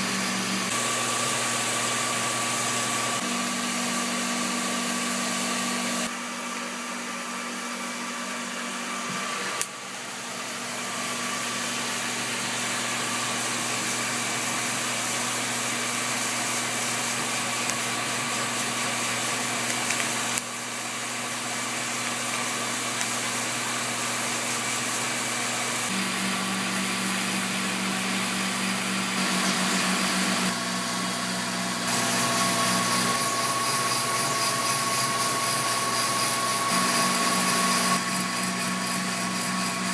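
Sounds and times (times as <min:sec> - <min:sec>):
coffee roaster blower hiss: 0:00.0 - 0:39.9.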